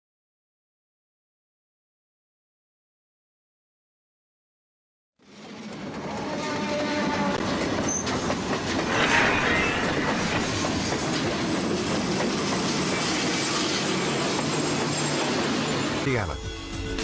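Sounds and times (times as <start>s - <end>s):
train wheels clattering on rails: 5.2s - 16.0s.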